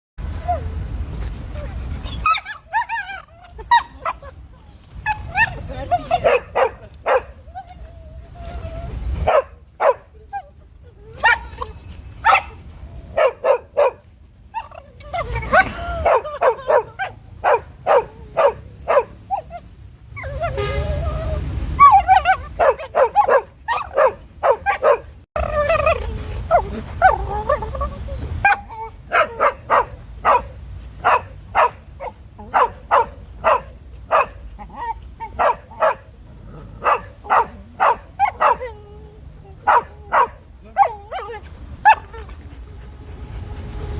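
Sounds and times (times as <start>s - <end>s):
dog barking: 6.2s - 7.3s, 9.2s - 10.1s, 12.2s - 14.0s, 16.0s - 19.5s, 22.0s - 25.1s, 28.5s - 34.4s, 35.4s - 36.1s, 36.8s - 38.6s, 39.6s - 40.4s.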